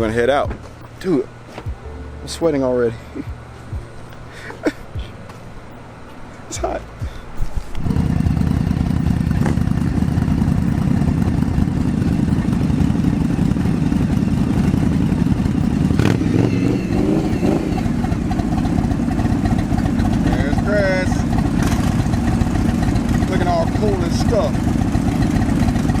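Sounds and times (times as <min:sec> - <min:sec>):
motorcycle engine idling: 0:07.8 - 0:26.0.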